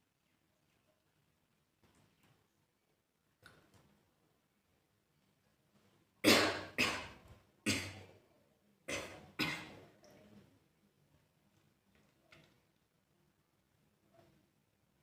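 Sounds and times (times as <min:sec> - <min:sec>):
person coughing: 0:06.2 - 0:08.1, 0:08.9 - 0:09.8.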